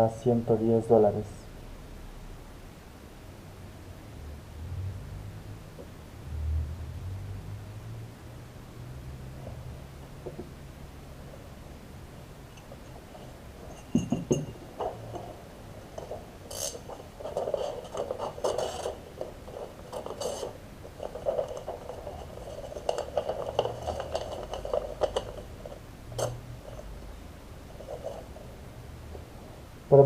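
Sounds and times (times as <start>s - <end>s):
packaging clicking and crinkling: 16.0s - 26.3s.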